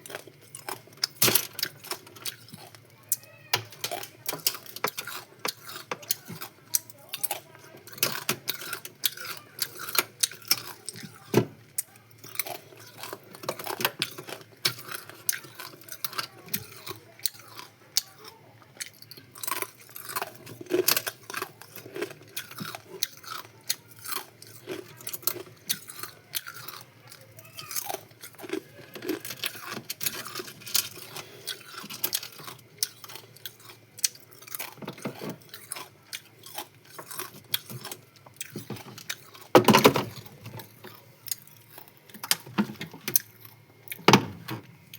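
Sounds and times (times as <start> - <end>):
ice cubes crunched by teeth: 12.2 - 34.8.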